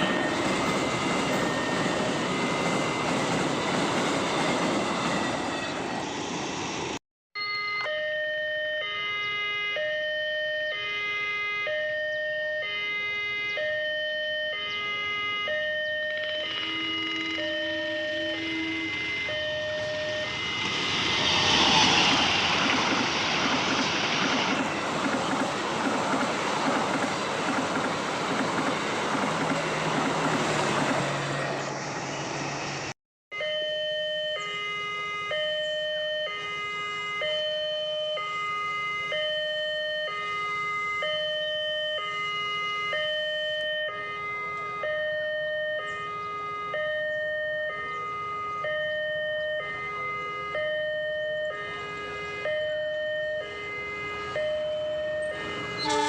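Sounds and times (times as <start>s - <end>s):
two-tone level-crossing alarm: 0.0s - 5.2s, 7.4s - 21.3s, 33.3s - 56.0s
train wheels on rails: 0.0s - 7.0s, 19.8s - 32.9s.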